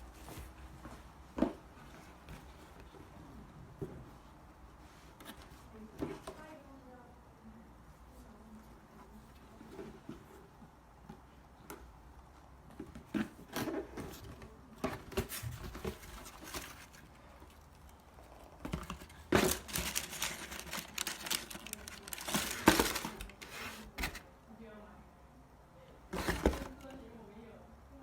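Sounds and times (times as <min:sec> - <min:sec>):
packaging crinkling: 0:18.7 - 0:23.5.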